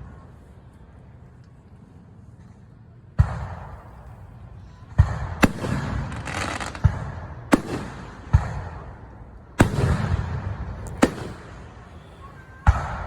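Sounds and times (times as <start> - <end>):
fireworks bangs: 3.2 - 13.0
fireworks crackling: 5.4 - 8.6, 10.8 - 12.5.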